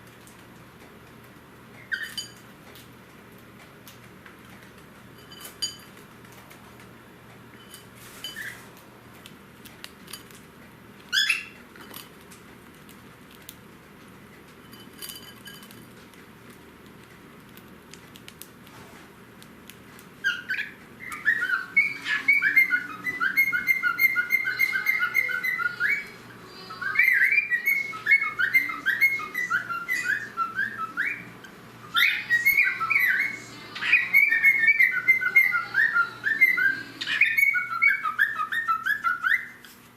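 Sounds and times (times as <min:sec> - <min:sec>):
cockatiel whistling: 0:11.1 - 0:11.6, 0:20.2 - 0:26.2, 0:26.8 - 0:39.6.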